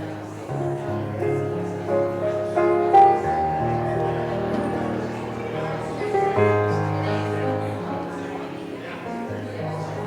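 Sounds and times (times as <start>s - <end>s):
keyboard playing held chords: 0.0s - 10.0s.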